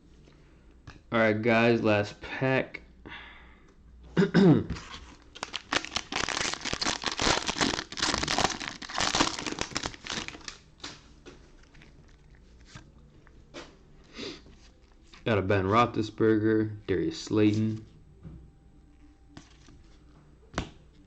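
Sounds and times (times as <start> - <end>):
cards rustling and clicking: 4.8 - 13.1
wrapper crinkling: 4.9 - 10.9, 11.5 - 13.0
card pack wrapper tearing: 5.1 - 10.6.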